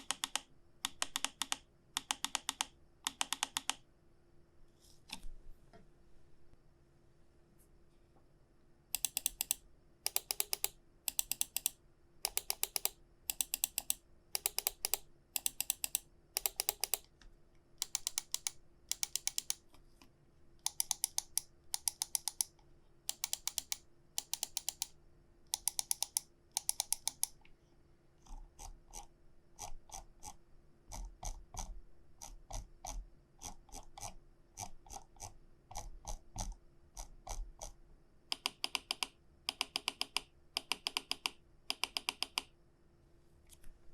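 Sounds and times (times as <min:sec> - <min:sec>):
mouse buttons clicking: 0:00.0 - 0:03.8, 0:09.0 - 0:17.0, 0:17.8 - 0:19.6, 0:20.6 - 0:22.5, 0:23.1 - 0:24.9, 0:38.3 - 0:42.5.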